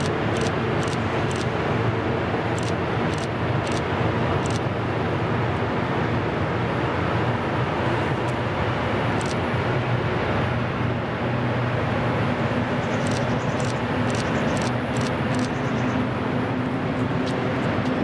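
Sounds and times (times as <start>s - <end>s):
sharp clicks: 0.0s - 1.5s, 2.6s - 3.8s, 4.4s - 4.6s, 13.0s - 15.6s
freight train rumbling past: 0.0s - 18.0s.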